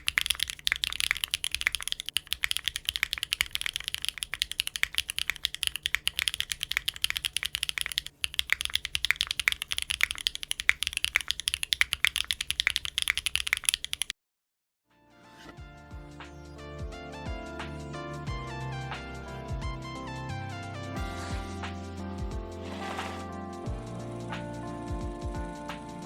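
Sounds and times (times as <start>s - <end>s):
mechanical keyboard typing: 0.0s - 14.1s.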